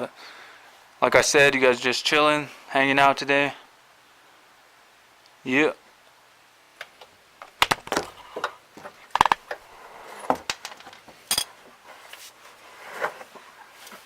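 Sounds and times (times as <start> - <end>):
tools and metal parts clinking: 11.3 - 11.6.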